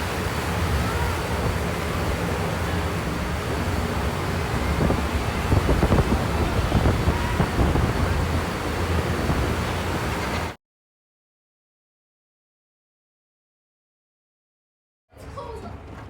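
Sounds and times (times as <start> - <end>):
blizzard wind rushing: 0.0 - 10.6
wind gusts buffeting microphone: 0.0 - 10.6.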